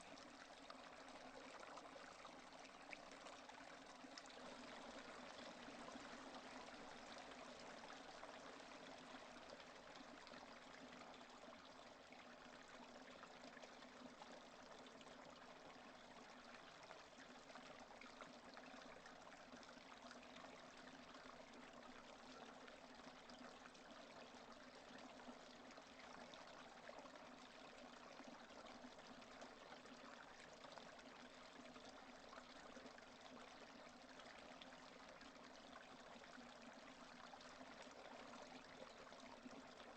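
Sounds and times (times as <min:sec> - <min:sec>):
faint steady rain: 0:00.0 - 0:39.9.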